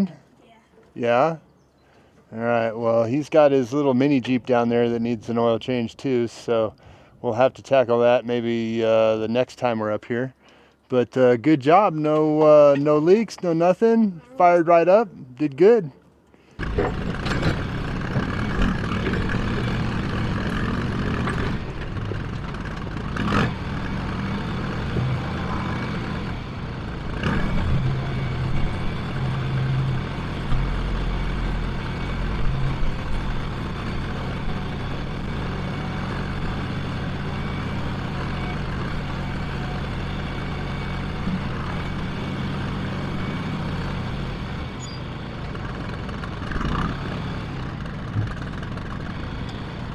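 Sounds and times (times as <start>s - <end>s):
diesel engine running: 16.1s - 49.9s.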